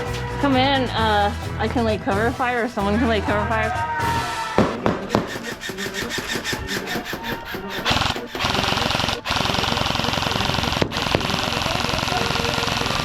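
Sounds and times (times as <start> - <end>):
airsoft rifles firing full-auto: 4.6 - 13.0.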